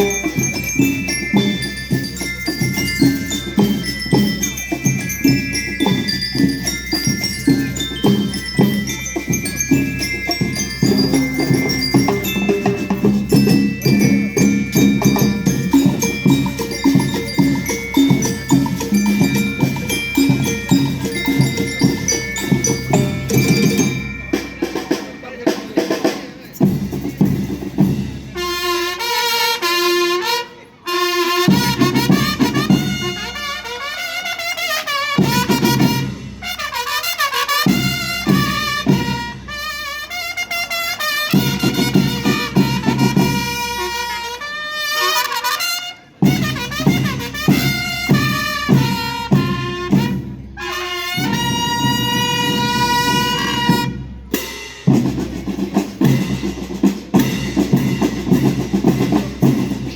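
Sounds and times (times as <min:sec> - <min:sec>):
marching drums: 0:00.0 - 0:59.9
trumpets playing melody: 0:28.4 - 0:54.6.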